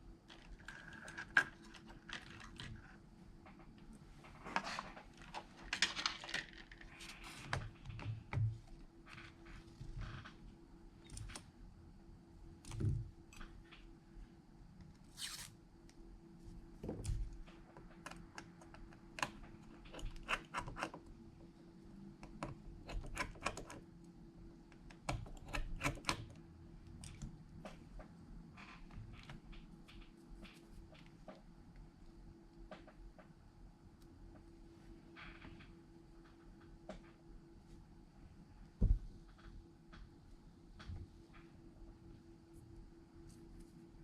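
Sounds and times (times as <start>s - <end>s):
faint steady hum: 0.0s - 44.0s.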